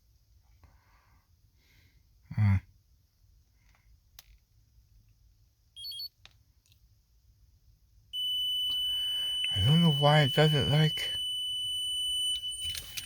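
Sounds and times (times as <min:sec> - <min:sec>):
high-pitched electronic beep: 0:08.2 - 0:13.0.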